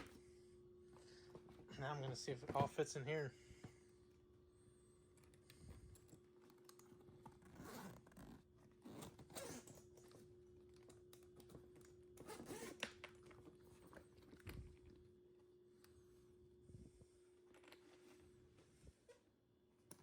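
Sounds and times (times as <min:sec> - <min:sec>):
faint steady hum: 0:00.0 - 0:20.0
zipper being pulled: 0:07.2 - 0:09.9, 0:12.2 - 0:12.9.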